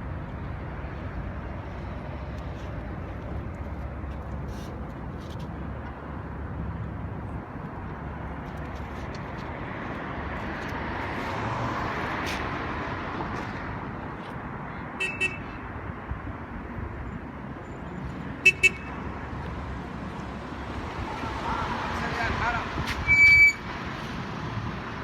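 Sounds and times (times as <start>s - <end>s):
road traffic noise: 0.0s - 25.0s
vehicle horn toots: 18.4s - 19.0s.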